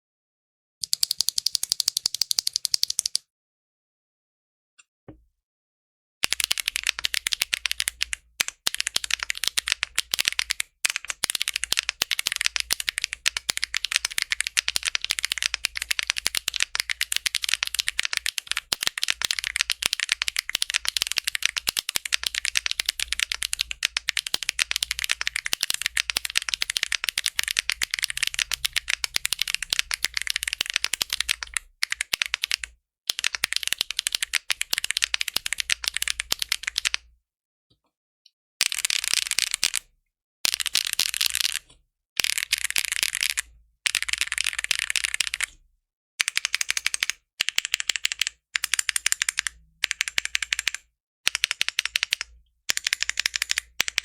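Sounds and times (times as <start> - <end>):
mechanical keyboard typing: 0.8 - 3.2, 6.2 - 37.1, 38.6 - 39.9, 40.5 - 45.6, 46.2 - 54.0.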